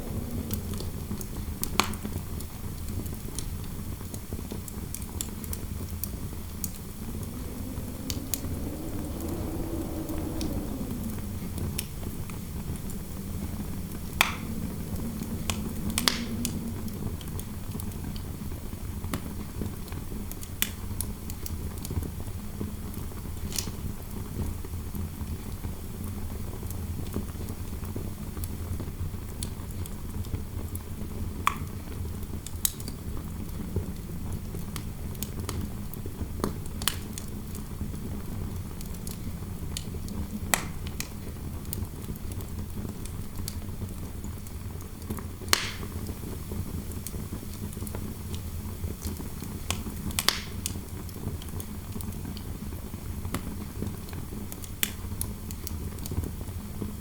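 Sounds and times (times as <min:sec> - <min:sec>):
low rush of wind noise: 0:00.0 - 0:19.9
fire crackling and popping: 0:00.0 - 0:22.0, 0:31.4 - 0:57.0.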